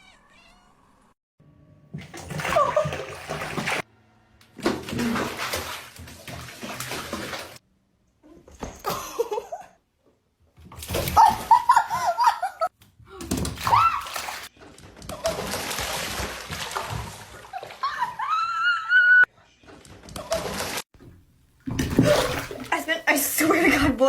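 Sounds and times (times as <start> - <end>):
water running and splashing: 2.0 - 3.9, 4.6 - 7.6, 13.4 - 14.5, 15.1 - 18.0, 20.3 - 23.8.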